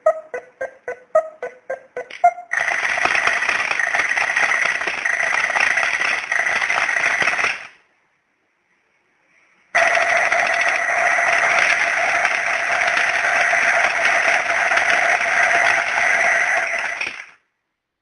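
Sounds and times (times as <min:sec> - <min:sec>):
alarm clock electronic ringing: 0:02.5 - 0:07.7, 0:09.8 - 0:17.3.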